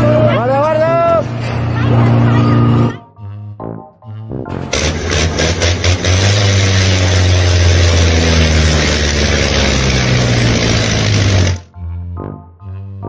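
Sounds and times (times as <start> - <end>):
engine running with low hum: 4.7 - 11.7.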